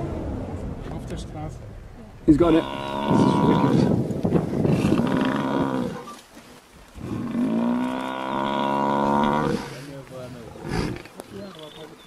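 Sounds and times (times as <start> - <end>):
buffalo bellowing: 2.4 - 4.0, 4.6 - 6.2, 7.0 - 9.8.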